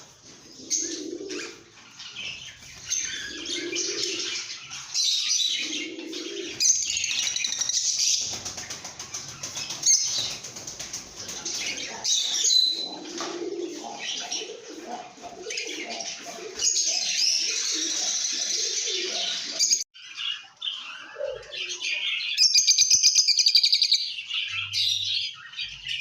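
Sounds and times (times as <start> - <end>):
lovebirds chirping and chattering: 0.0 - 26.0
fast rattling chatter: 6.9 - 12.5.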